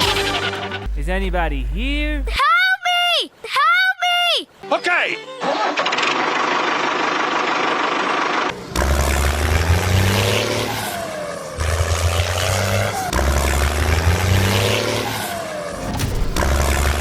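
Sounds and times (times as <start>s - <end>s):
vehicle engine with falling whine: 5.8s - 17.0s.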